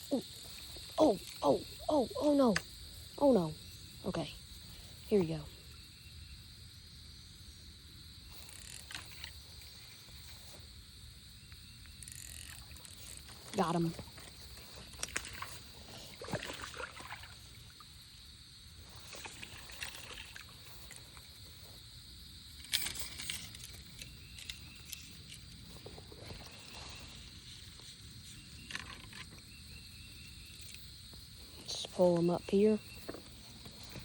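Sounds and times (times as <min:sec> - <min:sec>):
high-pitched insect buzz: 0:00.0 - 0:34.0
creek water flowing: 0:12.5 - 0:18.1
fish splashing: 0:14.8 - 0:17.8, 0:18.9 - 0:20.9.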